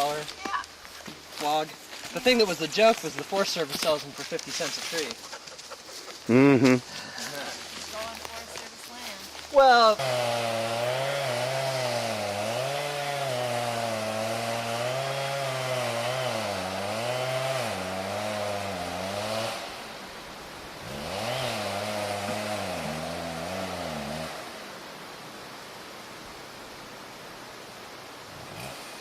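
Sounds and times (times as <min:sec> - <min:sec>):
chainsaw cutting wood: 0:09.6 - 0:20.0, 0:20.8 - 0:24.7, 0:28.3 - 0:29.0.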